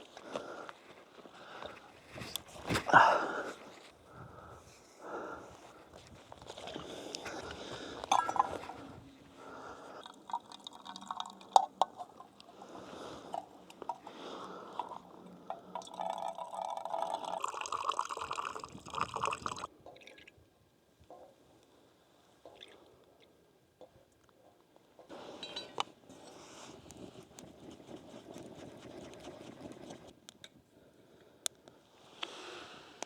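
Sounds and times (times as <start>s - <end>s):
small clinks: 8.0s - 8.9s, 25.4s - 25.8s
liquid pouring and sloshing: 10.0s - 12.6s, 14.7s - 20.4s.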